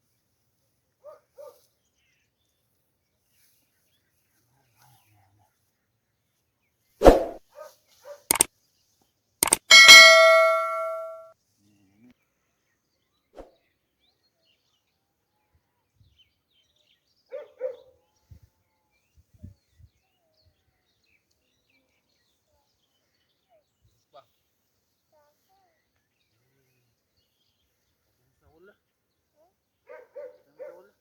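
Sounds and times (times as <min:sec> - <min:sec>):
metal object struck with clang: 0:09.4 - 0:11.3.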